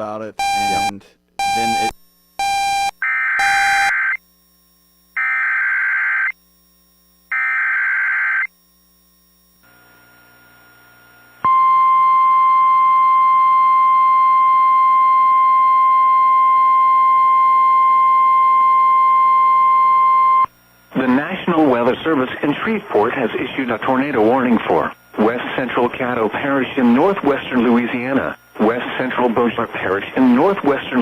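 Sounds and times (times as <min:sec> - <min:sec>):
steady alarm tone: 0:00.4 - 0:04.3, 0:04.9 - 0:06.4, 0:07.2 - 0:09.6.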